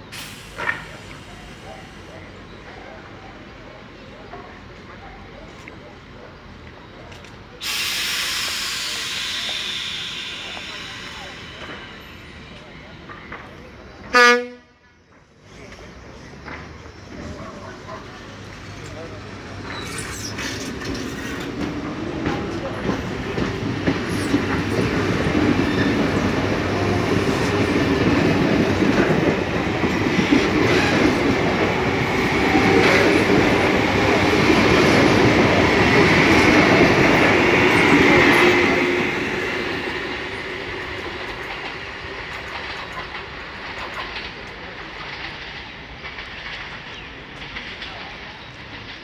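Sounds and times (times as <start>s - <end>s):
train whine: 0.0s - 49.0s
train wheels clattering over rail joints: 15.1s - 49.0s.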